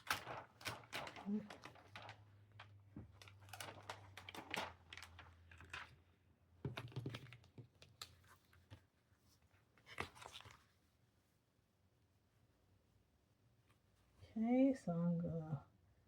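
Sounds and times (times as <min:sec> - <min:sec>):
plastic sheets crinkling and rustling: 0:00.0 - 0:06.0, 0:09.8 - 0:10.7.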